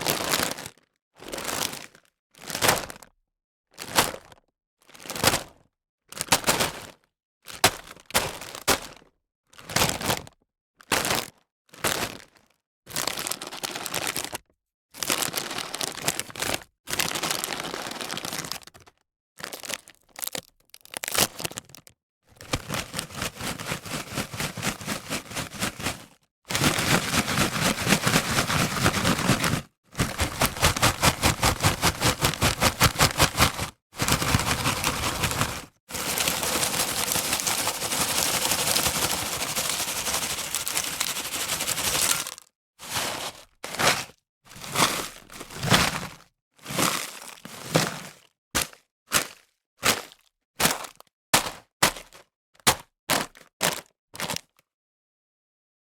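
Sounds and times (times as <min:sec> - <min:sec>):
potato chips crunching: 0:19.4 - 0:21.9, 0:29.3 - 0:42.5.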